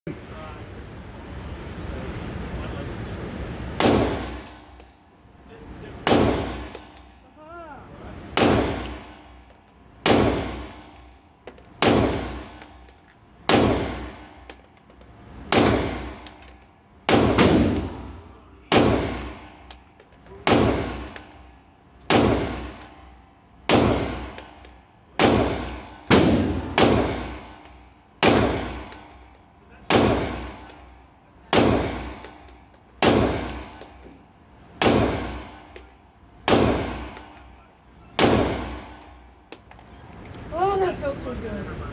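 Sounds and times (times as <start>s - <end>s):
pistol shots with echo: 3.8s - 4.6s, 6.0s - 6.9s, 8.4s - 9.4s, 10.0s - 11.0s, 11.8s - 12.6s, 13.5s - 14.4s, 15.5s - 16.3s, 17.1s - 19.6s, 20.4s - 21.2s, 22.1s - 22.9s, 23.7s - 24.6s, 25.2s - 27.6s, 28.2s - 29.1s, 29.9s - 30.8s, 31.5s - 33.8s, 34.8s - 35.8s, 36.5s - 37.3s, 38.2s - 39.2s.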